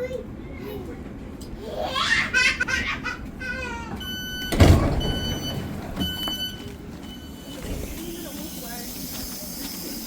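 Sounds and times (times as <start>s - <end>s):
child's high voice: 0.0s - 1.0s
sliding doors shutting thump: 4.0s - 6.6s
electronic door warning beeps: 4.0s - 10.0s.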